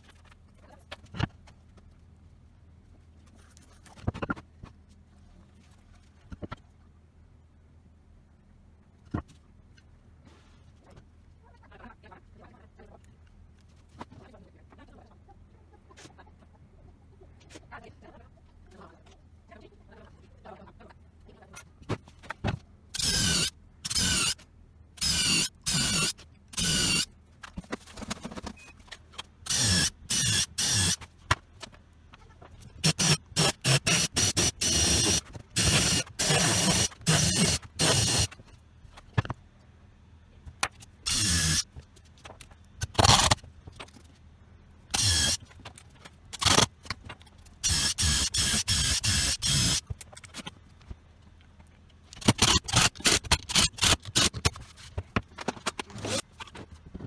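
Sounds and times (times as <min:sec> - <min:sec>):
electric power tool whining: 0:23.0 - 0:24.4, 0:25.0 - 0:27.0, 0:29.5 - 0:31.0, 0:32.8 - 0:38.3, 0:41.1 - 0:41.6, 0:45.0 - 0:45.4, 0:47.6 - 0:49.8.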